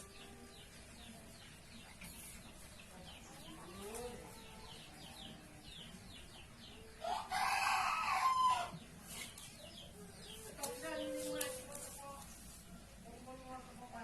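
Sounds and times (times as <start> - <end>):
small birds chirping: 0.0 - 14.0
rooster crowing: 7.0 - 8.7.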